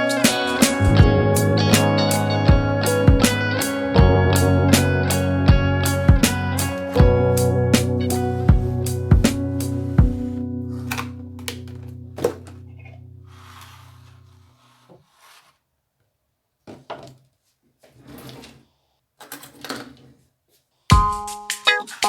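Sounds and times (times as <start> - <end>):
guitar chord ringing: 0.0 - 13.4.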